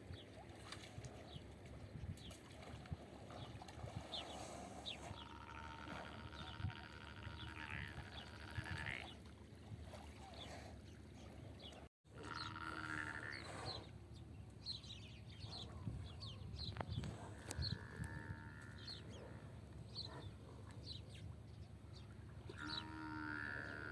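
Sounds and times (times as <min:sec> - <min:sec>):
farm animal bleating: 0:05.2 - 0:09.1, 0:12.2 - 0:13.4
small birds chirping: 0:13.3 - 0:23.0.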